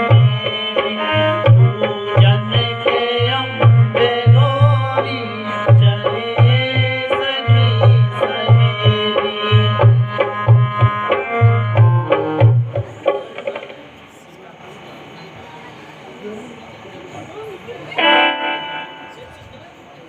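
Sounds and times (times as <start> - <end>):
sustained melody line: 0.0 - 13.0, 18.0 - 19.7
hand drum beating: 7.6 - 13.8.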